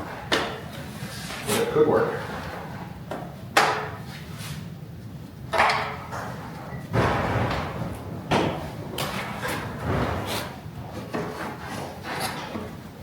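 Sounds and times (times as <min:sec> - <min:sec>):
items knocking in metal carrier: 0:06.9 - 0:11.2.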